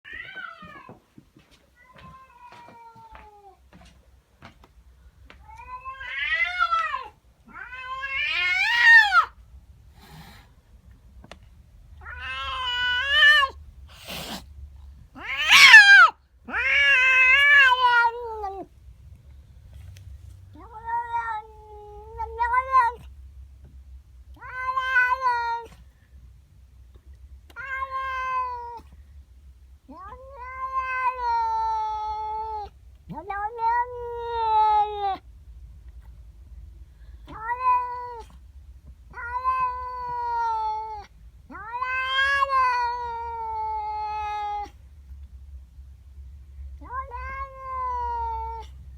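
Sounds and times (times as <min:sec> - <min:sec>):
cat yowling: 0:05.5 - 0:09.4, 0:12.0 - 0:14.4, 0:15.1 - 0:18.7, 0:20.6 - 0:23.1, 0:24.4 - 0:25.7, 0:27.6 - 0:28.8, 0:29.9 - 0:35.2, 0:37.3 - 0:38.3, 0:39.1 - 0:44.8, 0:46.8 - 0:48.8.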